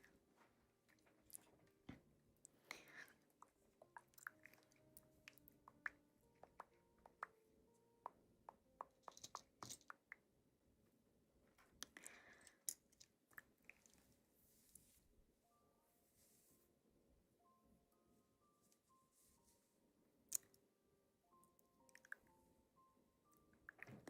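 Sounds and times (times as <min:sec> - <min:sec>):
wet chewing clicks and smacks: 0:03.4 - 0:07.3.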